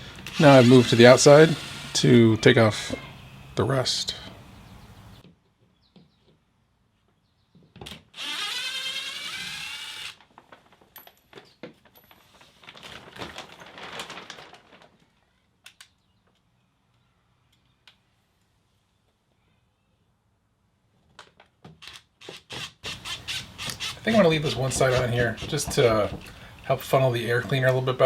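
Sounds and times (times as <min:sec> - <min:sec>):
cordless drill whirring: 0:00.0 - 0:02.2, 0:08.2 - 0:10.2, 0:21.8 - 0:24.6
handling noise: 0:23.6 - 0:27.7.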